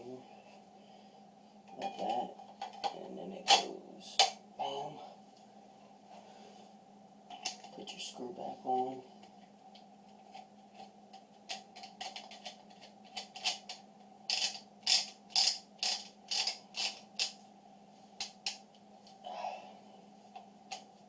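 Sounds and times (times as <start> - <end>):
ratcheting clicks: 11.5 - 17.4.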